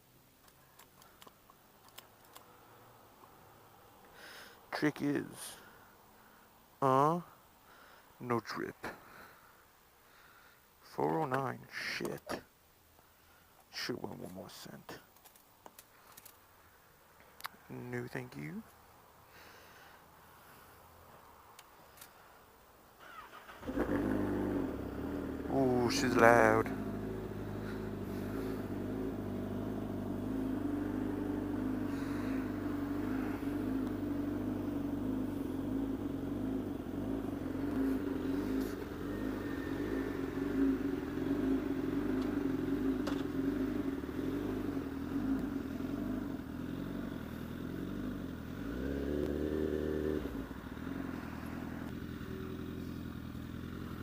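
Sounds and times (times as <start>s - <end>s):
motorcycle engine revving: 23.0s - 54.0s.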